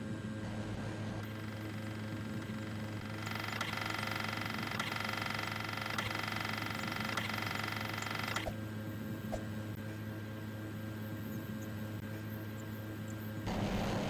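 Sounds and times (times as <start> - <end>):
electrical hum: 0.0 - 14.0
washing machine motor whining: 13.5 - 14.0.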